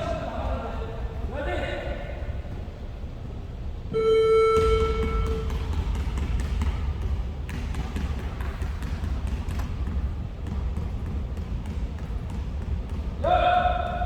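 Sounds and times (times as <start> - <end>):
basketballs bouncing on gym floor: 4.0 - 14.0.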